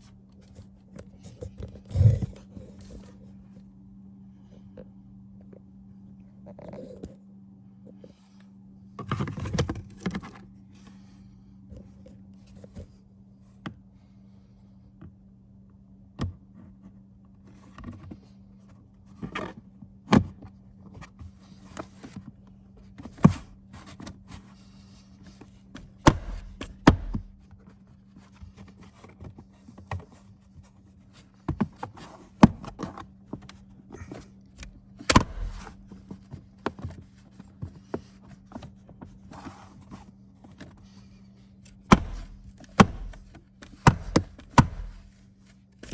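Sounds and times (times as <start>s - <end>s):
steady low hum: 0.0s - 45.9s.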